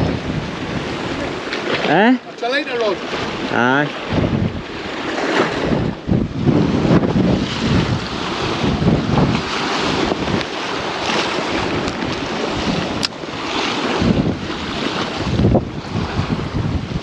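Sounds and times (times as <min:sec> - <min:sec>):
sea surf breaking: 0:00.0 - 0:17.0
wind buffeting microphone: 0:00.0 - 0:17.0.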